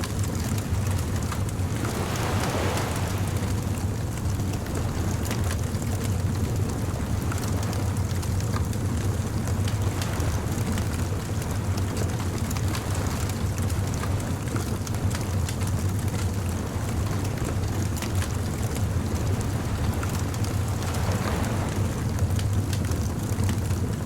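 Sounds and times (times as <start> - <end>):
wave washing in: 0.0 - 23.4
surf rumbling: 0.0 - 24.0
bonfire crackling and popping: 22.2 - 24.0.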